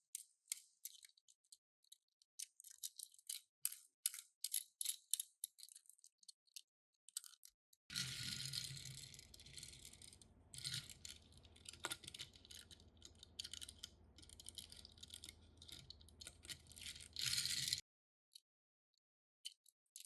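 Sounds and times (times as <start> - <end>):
toy cars rattling: 7.2 - 17.8.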